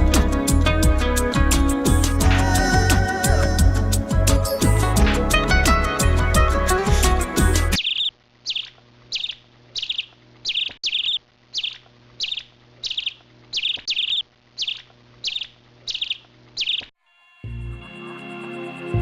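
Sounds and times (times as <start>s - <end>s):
songbird chirping: 7.8s - 16.9s.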